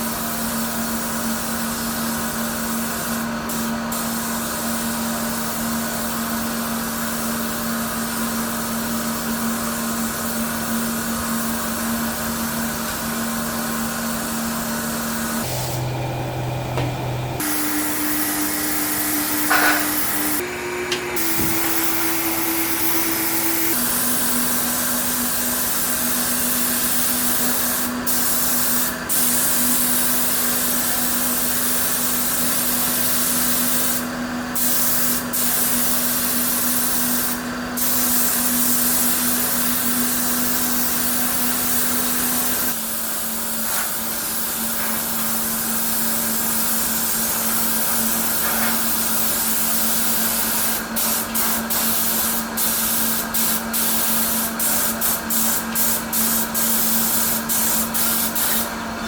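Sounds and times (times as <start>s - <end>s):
spray gun hissing: 1.8s - 5.6s, 11.4s - 20.4s, 21.0s - 58.8s
machine humming: 15.4s - 24.0s.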